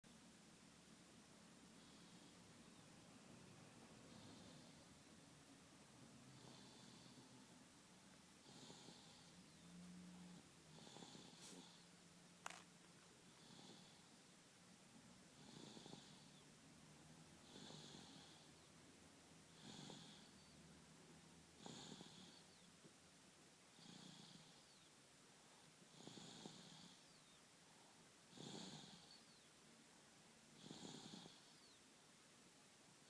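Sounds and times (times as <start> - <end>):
baby snoring faintly: 1.7 - 2.6, 4.0 - 5.1, 6.2 - 7.5, 8.4 - 12.6, 13.3 - 14.2, 15.3 - 16.5, 17.4 - 18.7, 19.5 - 20.6, 21.6 - 22.7, 23.7 - 24.9, 25.9 - 27.4, 28.3 - 29.5, 30.6 - 31.8.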